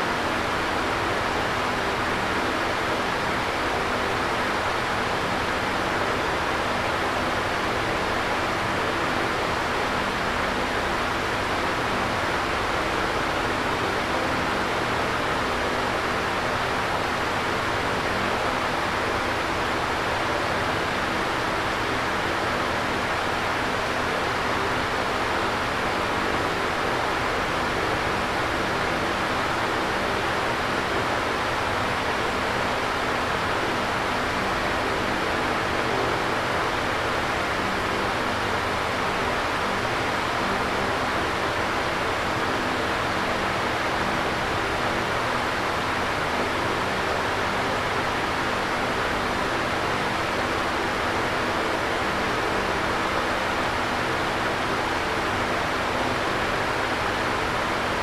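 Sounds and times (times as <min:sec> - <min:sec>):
faint steady hum: 0:00.0 - 0:58.0.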